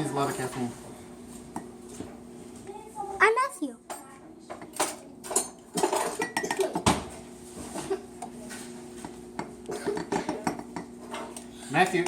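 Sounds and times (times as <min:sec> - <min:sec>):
dishes and utensils clattering: 0:03.9 - 0:12.0.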